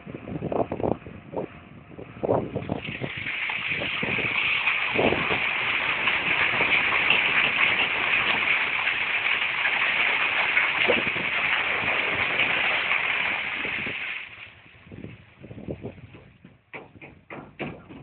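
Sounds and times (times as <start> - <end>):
scattered knocks: 16.1 - 18.0.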